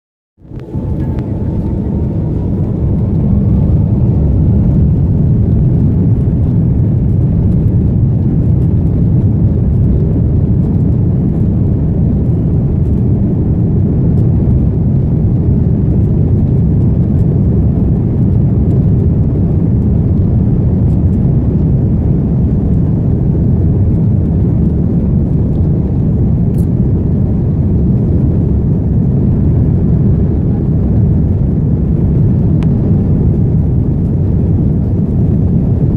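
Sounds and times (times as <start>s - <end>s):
rising engine whine: 0.4s - 17.5s
jet engines at takeoff power: 0.4s - 35.9s
runway rumble: 0.4s - 35.9s.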